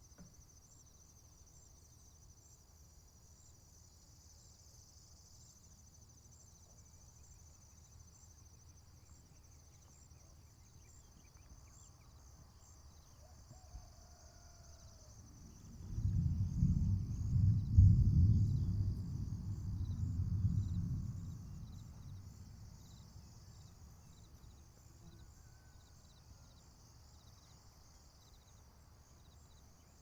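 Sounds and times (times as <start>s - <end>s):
insects trilling: 0.0s - 30.0s
low background rumble: 15.5s - 23.9s.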